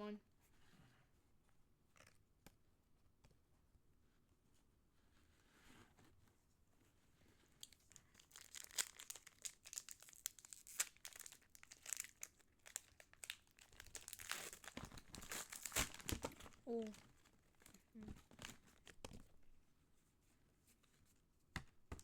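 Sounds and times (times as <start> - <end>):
foil wrapper tearing and crinkling: 7.6 - 19.0.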